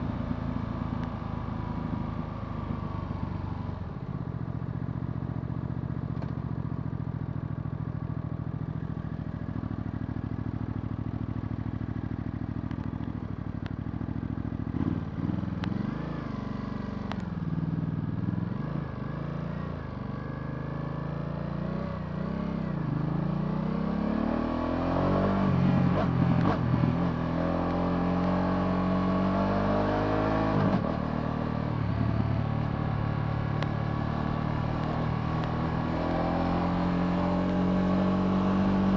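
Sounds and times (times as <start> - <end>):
motorcycle engine revving: 9.9 - 19.6, 20.4 - 38.9.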